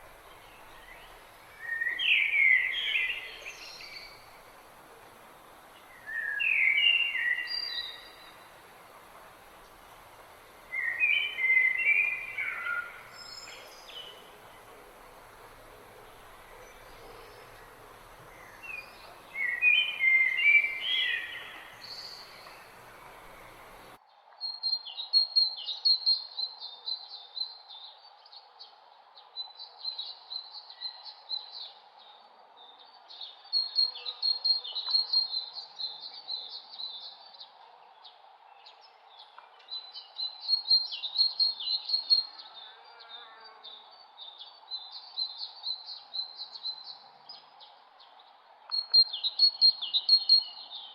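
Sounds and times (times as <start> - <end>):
faint steady hum: 0.0 - 24.0
songbirds chirping: 0.0 - 50.9.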